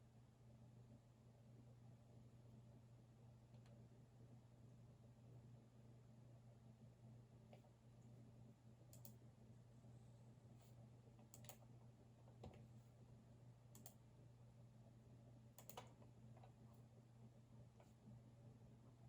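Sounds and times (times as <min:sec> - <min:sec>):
steady low hum: 0:00.0 - 0:19.0
computer keyboard key presses: 0:15.6 - 0:16.0.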